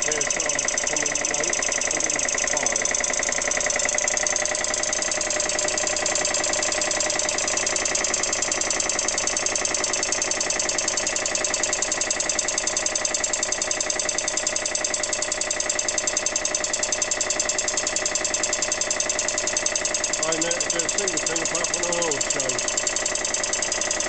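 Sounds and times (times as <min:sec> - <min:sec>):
air compressor pump pulsing: 0:00.0 - 0:24.0.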